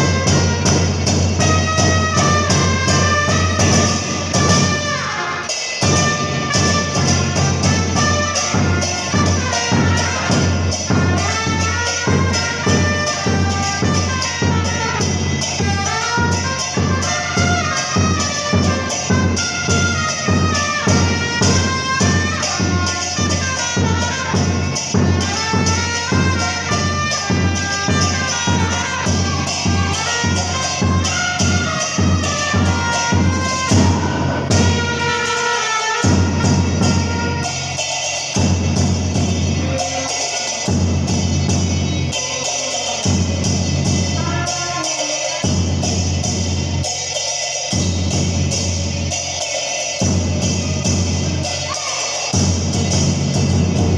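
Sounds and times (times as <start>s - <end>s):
trumpets playing a melody: 0.0s - 46.4s.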